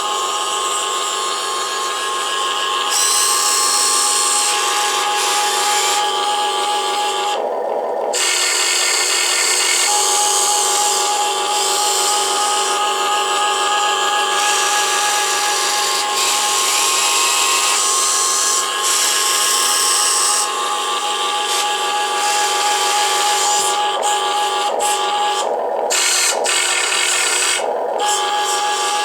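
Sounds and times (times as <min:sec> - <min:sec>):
toy excavator motors whining: 0:00.0 - 0:29.0.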